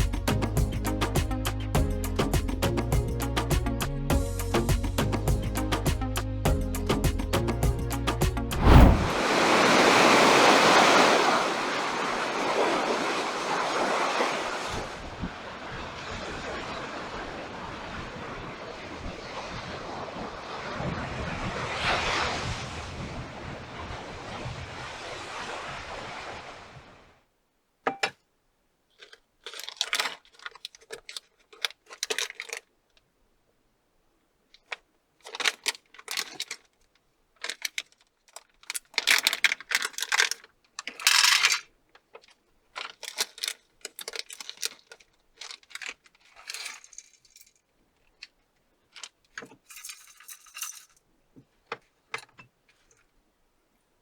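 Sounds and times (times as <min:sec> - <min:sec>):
surf: 0:08.4 - 0:27.1
wind: 0:08.4 - 0:29.4
packaging tearing: 0:29.0 - 0:32.7, 0:35.2 - 0:36.7, 0:37.4 - 0:41.5, 0:42.8 - 0:47.0
objects clinking and clicking: 0:37.4 - 0:47.6, 0:49.0 - 0:51.0.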